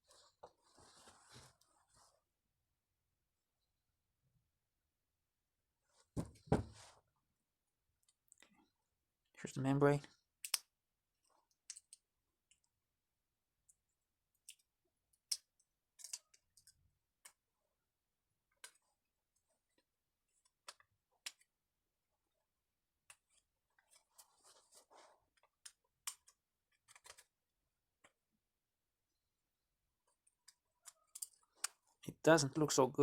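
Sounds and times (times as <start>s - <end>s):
clicks and taps of small metal parts: 10.4s - 10.7s, 14.4s - 17.4s.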